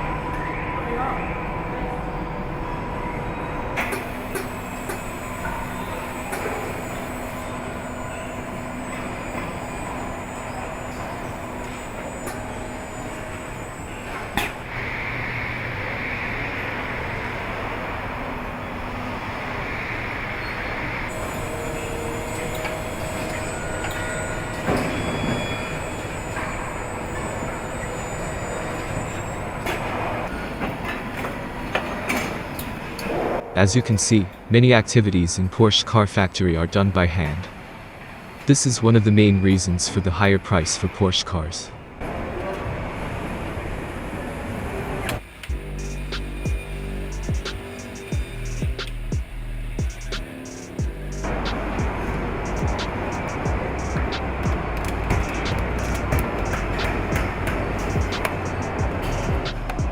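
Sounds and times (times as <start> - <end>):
machinery hum and hiss: 0.0 - 59.9
steady tones: 38.6 - 59.9
sharp clicks and clanks: 47.2 - 59.9.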